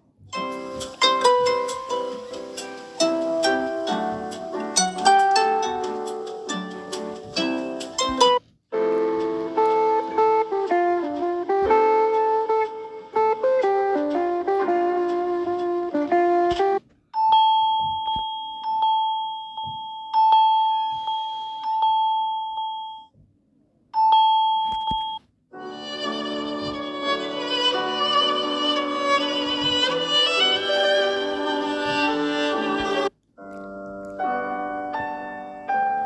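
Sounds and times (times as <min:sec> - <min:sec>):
melodic phone ringtone: 0:00.4 - 0:11.6, 0:17.2 - 0:23.1, 0:24.0 - 0:27.4.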